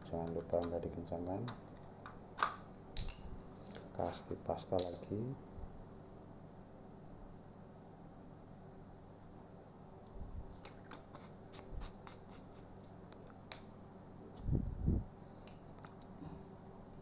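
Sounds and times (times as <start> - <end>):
laptop parts and tools clicking: 0.0 - 3.9.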